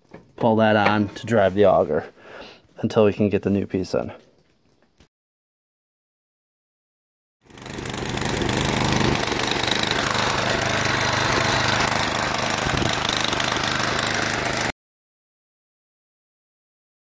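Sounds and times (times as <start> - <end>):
snow blower engine running: 7.5 - 14.7.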